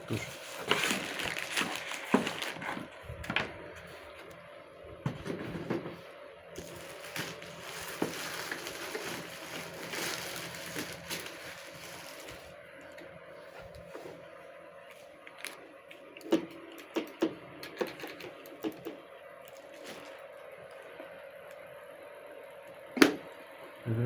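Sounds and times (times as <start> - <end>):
packaging rustling: 0.0 - 3.5, 6.6 - 12.6, 19.5 - 20.8.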